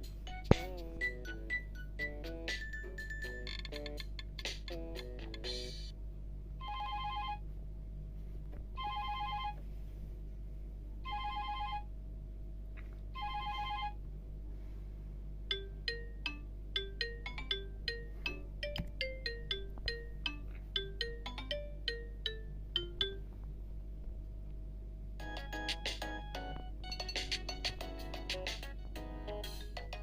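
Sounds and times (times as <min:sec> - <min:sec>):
low hum: 0:03.6 - 0:30.0
phone melody of short notes: 0:08.8 - 0:09.6, 0:15.5 - 0:23.2
warbling two-note phone trill: 0:13.2 - 0:14.0.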